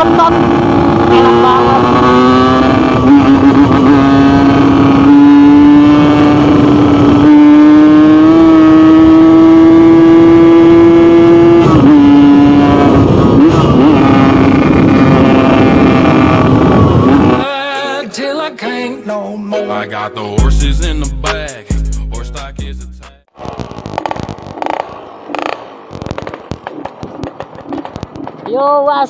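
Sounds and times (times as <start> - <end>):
two-stroke motorcycle engine buzzing: 0.0 - 17.4.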